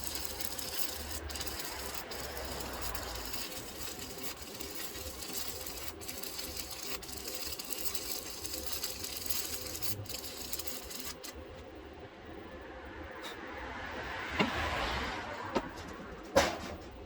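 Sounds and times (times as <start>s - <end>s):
electric arc welding sizzle: 0.0s - 11.4s.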